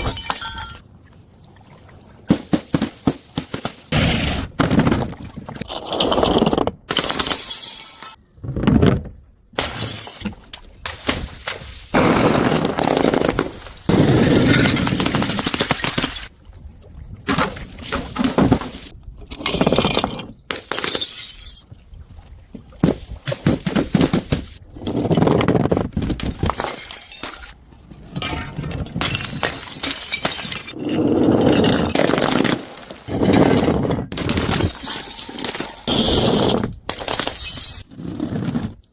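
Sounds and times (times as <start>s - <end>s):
glass bottles smashing: 0.0s - 0.8s, 6.9s - 8.2s, 9.6s - 10.3s, 20.5s - 21.6s, 26.3s - 27.6s, 28.2s - 33.1s, 34.2s - 37.9s.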